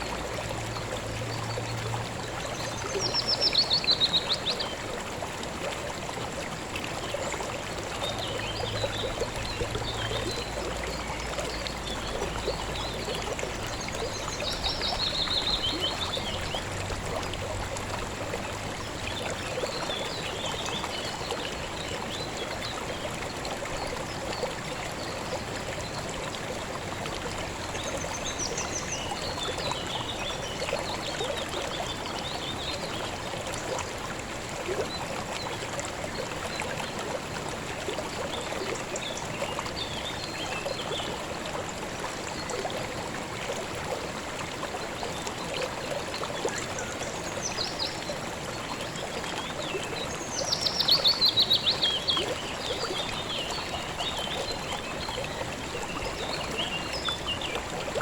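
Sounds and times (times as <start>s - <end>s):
river water babbling: 0.0s - 58.0s.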